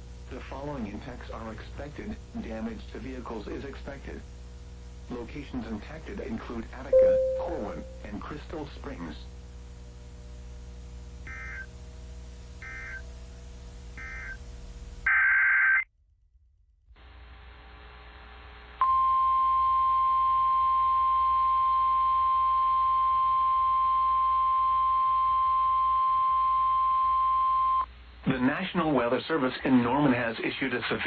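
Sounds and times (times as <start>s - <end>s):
steady alert tone: 7.0s - 8.2s.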